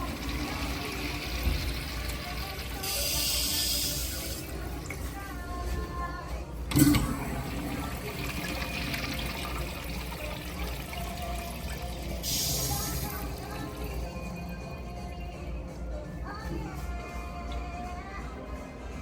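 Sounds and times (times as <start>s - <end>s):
water rushing through bowl: 0.0s - 5.3s, 6.7s - 14.4s
toilet flushing: 0.0s - 6.0s, 6.7s - 15.0s.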